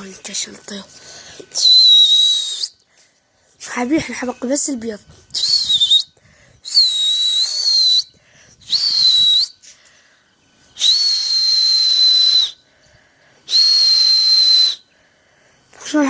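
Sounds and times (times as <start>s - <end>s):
person whistling loudly: 1.5s - 2.8s, 5.3s - 9.8s, 10.8s - 12.6s, 13.5s - 14.9s.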